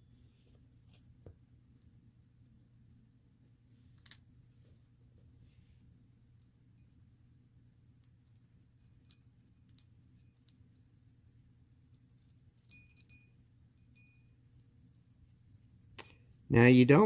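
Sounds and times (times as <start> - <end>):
faint low hum: 0.0 - 17.0
metallic clinks with ring: 8.0 - 11.0, 12.2 - 16.5.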